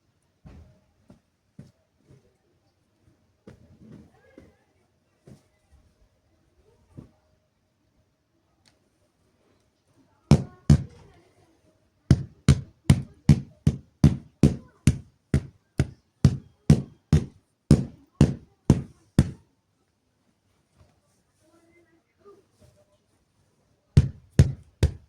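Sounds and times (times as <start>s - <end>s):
blanket being beaten: 10.3s - 11.0s, 12.1s - 19.4s, 24.0s - 25.0s.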